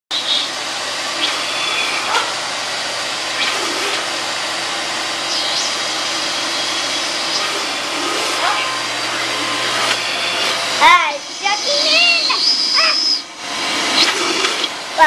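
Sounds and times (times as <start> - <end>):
vacuum cleaner air rush: 0.2 - 15.0
sliding whistling tones: 5.2 - 10.6, 11.4 - 13.3.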